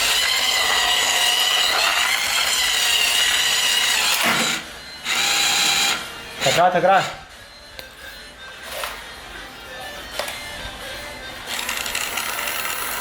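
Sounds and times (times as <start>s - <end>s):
toy car motor whirring: 0.0s - 4.4s, 11.5s - 13.0s.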